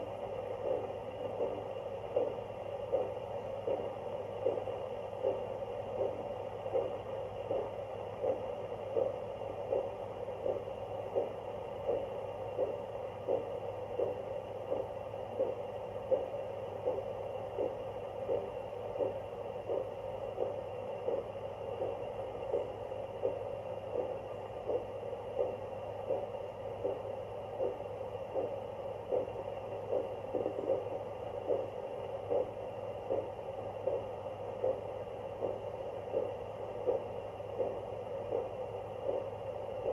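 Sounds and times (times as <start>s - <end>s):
steady hum: 0.0s - 39.9s.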